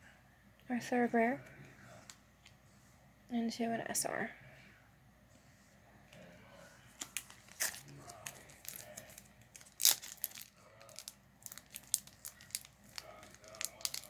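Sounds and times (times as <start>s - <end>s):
plastic wrapper crinkling and tearing: 7.0s - 14.0s.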